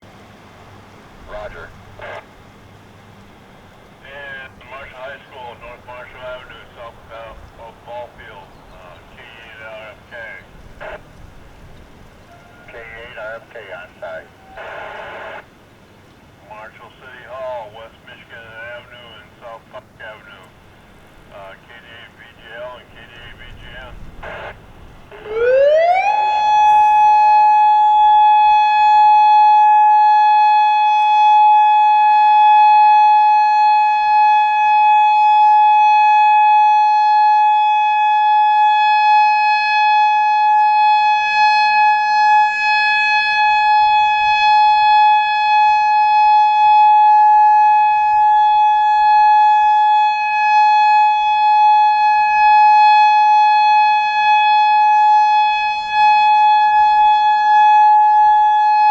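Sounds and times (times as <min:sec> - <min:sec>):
electronic warning siren: 0:01.3 - 0:02.3, 0:12.3 - 0:15.5, 0:23.6 - 0:58.9.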